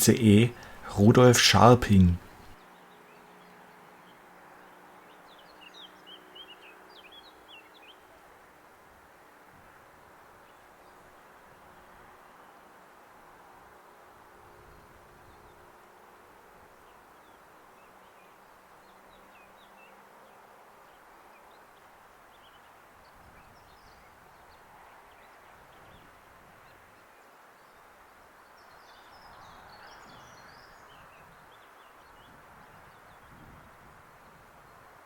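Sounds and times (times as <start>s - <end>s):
steady outdoor hiss: 0.0s - 2.6s.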